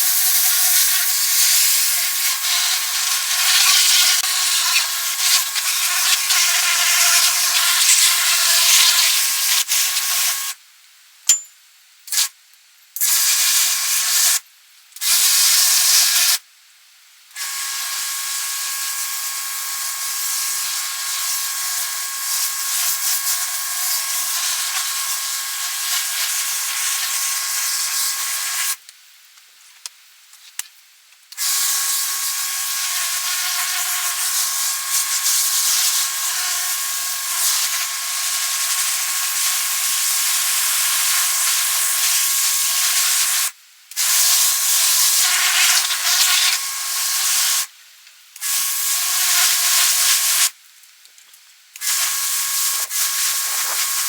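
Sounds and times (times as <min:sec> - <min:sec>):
pressure washer spraying: 0:00.0 - 0:10.2, 0:51.8 - 0:54.0.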